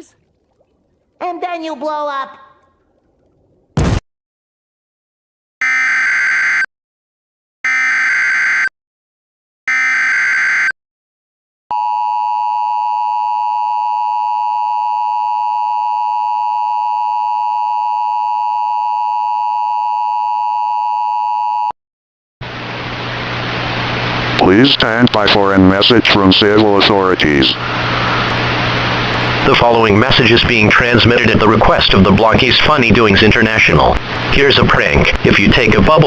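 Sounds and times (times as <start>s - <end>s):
two-tone attention signal: 5.6s - 6.7s, 7.7s - 8.7s, 9.7s - 10.7s.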